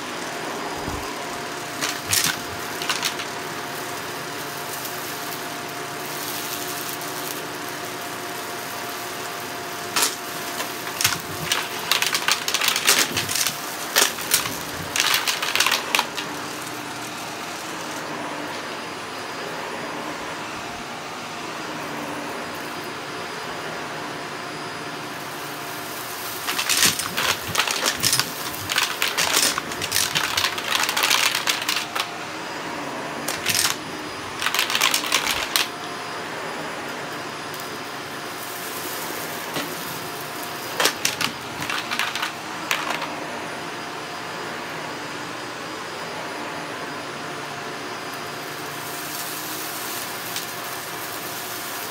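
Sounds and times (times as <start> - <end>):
vacuum cleaner motor hum: 0.0 - 51.9
rapid clicking and rattling: 1.8 - 3.3, 10.0 - 16.3, 26.4 - 32.1, 33.3 - 33.8, 34.4 - 35.7, 40.8 - 43.1.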